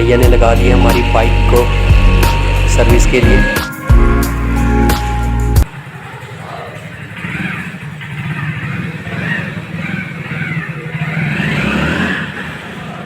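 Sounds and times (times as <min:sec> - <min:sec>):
small motorcycle engine running: 0:00.0 - 0:13.0
indistinct voices: 0:04.4 - 0:11.1.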